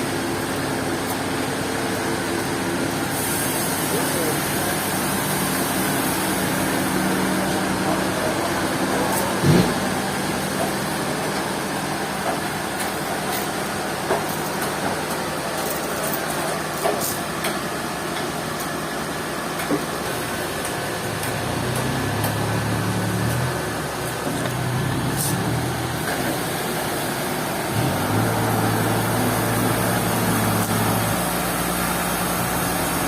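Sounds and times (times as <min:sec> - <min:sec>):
sawmill motor drone: 0:20.2 - 0:33.0.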